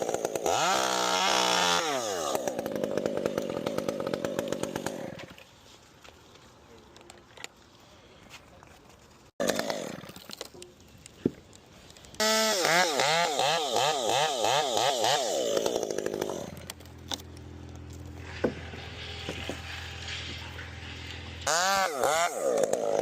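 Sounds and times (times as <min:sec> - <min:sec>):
chainsaw revving and idling: 0:00.0 - 0:05.4, 0:09.4 - 0:10.2, 0:12.2 - 0:18.6, 0:21.2 - 0:23.0.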